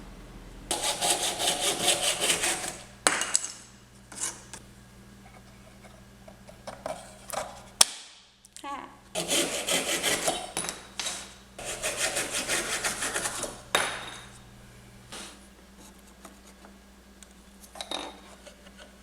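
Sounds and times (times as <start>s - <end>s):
saw rasping through wood: 0.7s - 2.9s, 9.2s - 10.6s, 11.6s - 13.6s.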